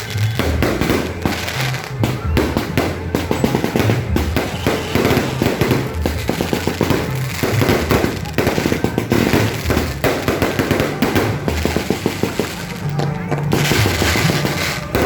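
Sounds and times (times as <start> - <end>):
firecrackers popping and crackling: 0.0 - 15.0.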